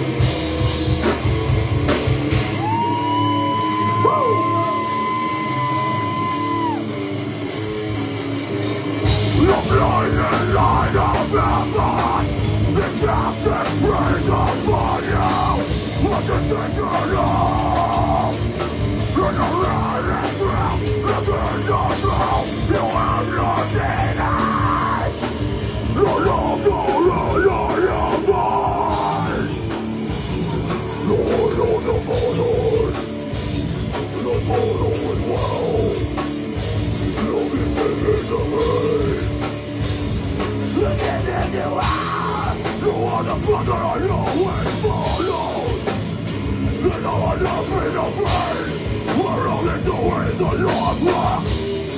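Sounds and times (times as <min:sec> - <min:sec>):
heavy rock band playing: 0:00.0 - 0:51.9.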